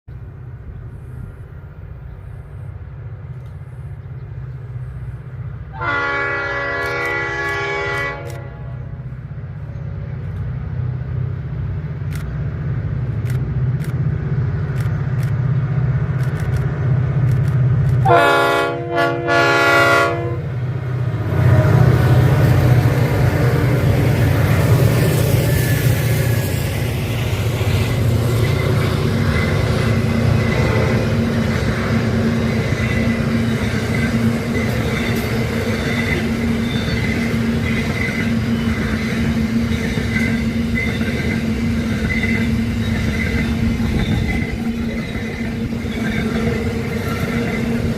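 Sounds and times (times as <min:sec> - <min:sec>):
diesel locomotive engine rumble: 0:00.1 - 0:47.9
train wheels on rails: 0:00.1 - 0:47.9
train horn blasts: 0:05.7 - 0:09.0, 0:18.0 - 0:23.6.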